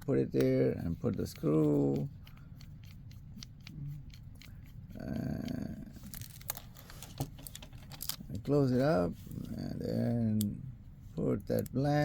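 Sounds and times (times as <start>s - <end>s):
small clicks and scrapes: 1.0s - 8.5s.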